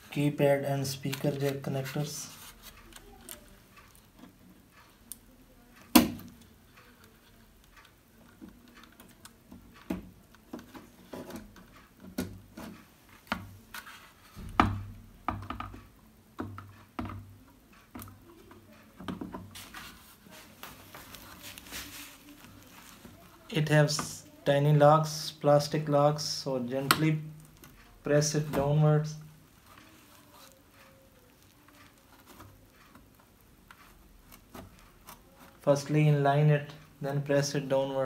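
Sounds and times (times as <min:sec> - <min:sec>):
plastic parts clicking and knocking: 0:00.3 - 0:19.8, 0:26.8 - 0:35.6
soft rustling: 0:00.9 - 0:04.1, 0:18.4 - 0:23.5, 0:28.6 - 0:36.0.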